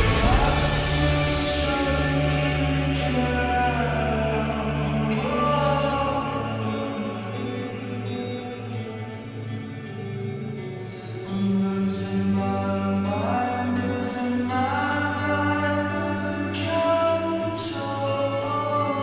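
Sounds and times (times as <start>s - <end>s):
airy swells: 0.0s - 4.9s
man singing: 0.0s - 8.7s, 10.9s - 19.0s
sustained chords: 0.0s - 13.8s.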